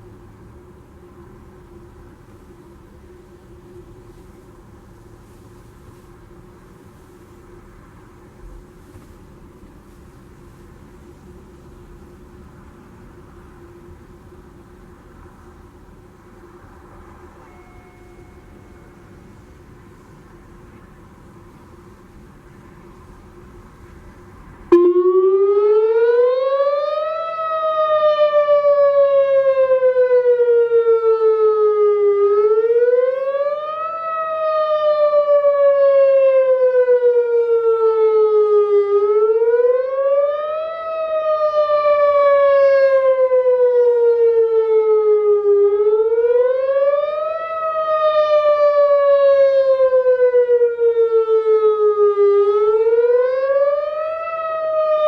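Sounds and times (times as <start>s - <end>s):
warning siren sweeping up and down: 24.3s - 55.0s.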